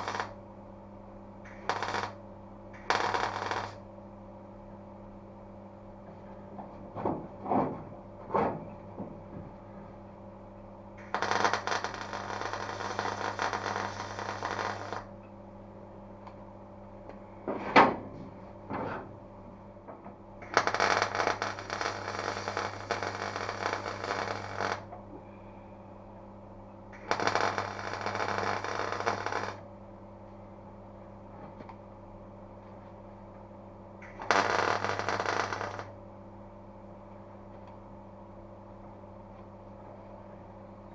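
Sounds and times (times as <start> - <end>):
welder welding steel: 0.0 - 0.4, 1.5 - 2.2, 2.8 - 3.8, 11.0 - 15.1, 20.4 - 24.9, 27.0 - 29.6, 34.0 - 35.9
steady hum: 0.0 - 5.8, 9.5 - 17.6, 19.3 - 31.2.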